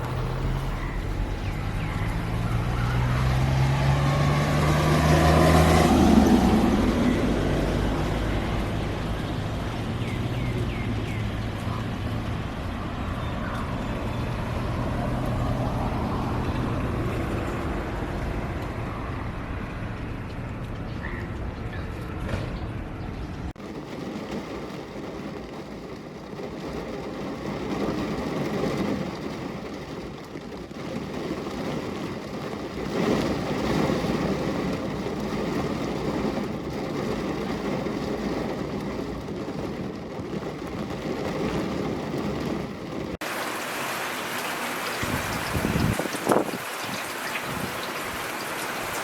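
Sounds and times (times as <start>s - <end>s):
rushing water: 42.2s - 49.0s.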